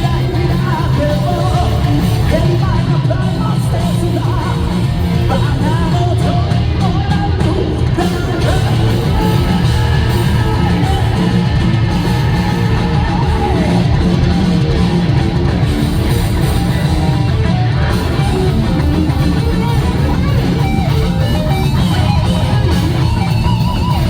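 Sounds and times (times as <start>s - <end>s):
man singing lead vocals: 0.0s - 23.9s
hard rock band playing: 0.0s - 24.0s.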